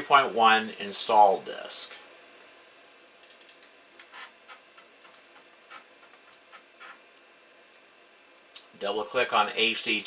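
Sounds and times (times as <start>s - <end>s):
computer disk drive clicking: 3.2s - 7.0s.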